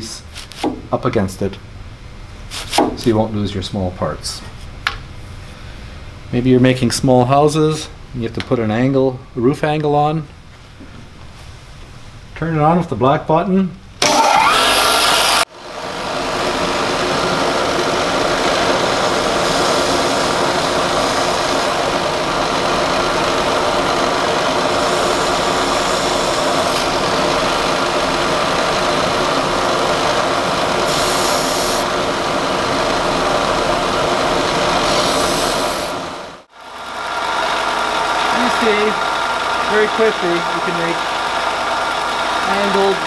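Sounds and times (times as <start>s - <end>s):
hiss of wood sanding: 2.5s - 3.0s, 17.8s - 27.6s, 30.6s - 32.0s, 34.6s - 36.2s
sander belt running: 14.0s - 43.0s.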